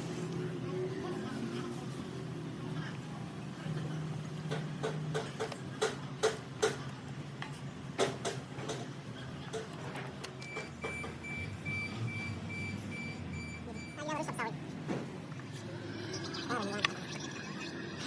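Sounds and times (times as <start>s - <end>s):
high electronic beep: 10.8s - 14.4s, 15.7s - 18.0s.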